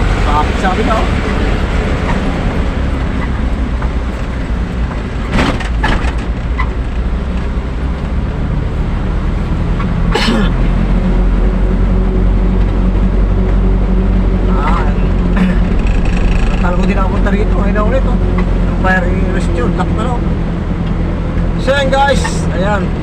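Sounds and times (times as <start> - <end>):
road noise: 0.0 - 23.0
truck engine running: 0.0 - 23.0
sharp knocks or rattles: 4.8 - 7.4, 15.1 - 17.3.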